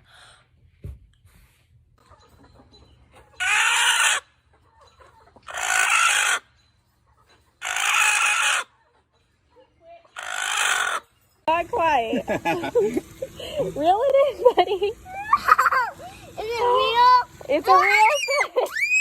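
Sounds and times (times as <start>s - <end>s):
chicken calling loudly: 3.4s - 4.3s, 5.4s - 6.5s, 7.6s - 8.8s, 10.2s - 11.1s.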